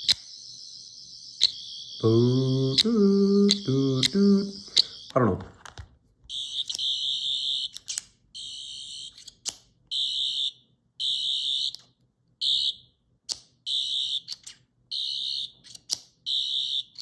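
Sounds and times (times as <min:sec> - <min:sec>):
high-pitched electronic warbling buzzes: 0:00.3 - 0:05.1.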